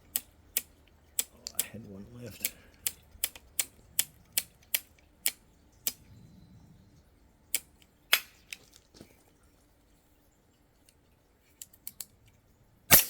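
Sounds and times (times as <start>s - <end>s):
sharp mechanical clicks: 0.0s - 6.0s, 7.5s - 8.6s.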